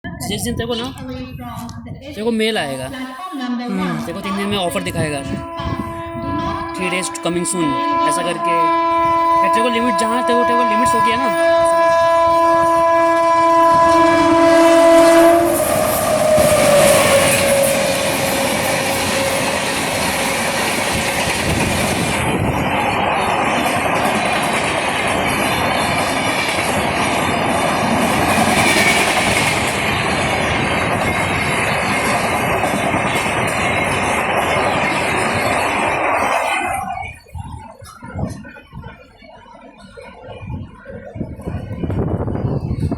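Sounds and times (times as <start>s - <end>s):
train rumble and clickety-clack: 0.0s - 3.0s, 3.8s - 42.9s
train horn blaring: 3.7s - 37.2s.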